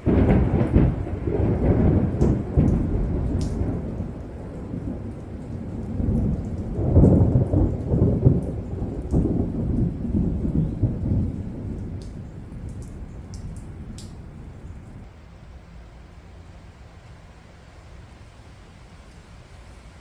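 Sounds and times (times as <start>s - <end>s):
thunder rumbling: 0.0s - 15.1s
steady rain: 0.0s - 20.0s
sharp drips: 0.4s - 15.1s.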